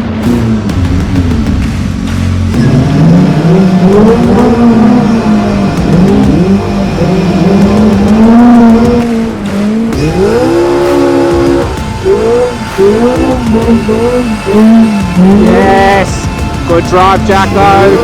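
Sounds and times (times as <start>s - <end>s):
off-road vehicle engine revving: 0.0s - 18.0s.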